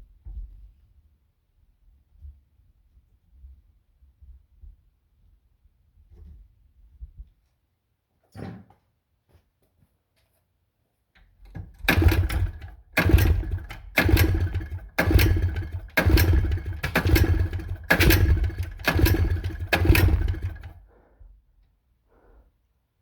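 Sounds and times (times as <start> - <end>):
engine pull-starter yanked: 11.6 - 20.8
engine turning over: 11.7 - 20.9.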